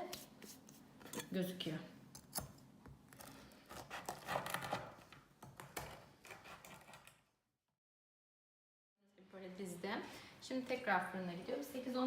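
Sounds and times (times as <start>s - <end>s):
knife sawing through biscuit: 3.6s - 4.9s.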